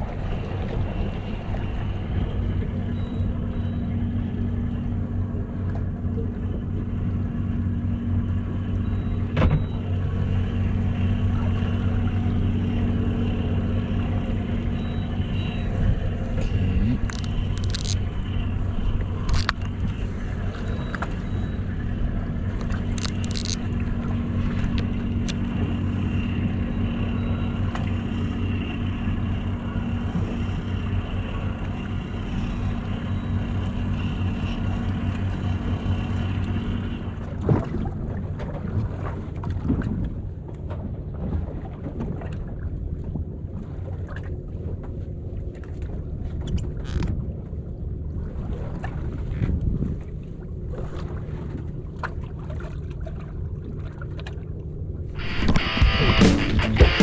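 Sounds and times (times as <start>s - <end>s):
boat engine humming: 0.0s - 57.0s
sharp knocks on boat: 9.3s - 9.8s.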